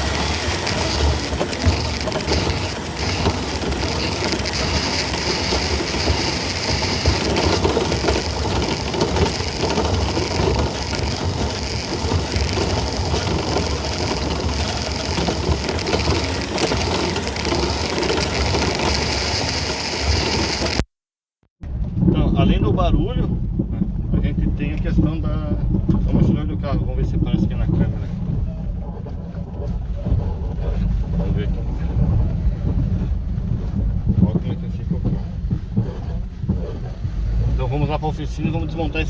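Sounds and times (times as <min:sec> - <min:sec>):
suspension knocking and rattling: 0:00.0 - 0:20.8, 0:21.6 - 0:39.0
road noise: 0:00.0 - 0:20.9.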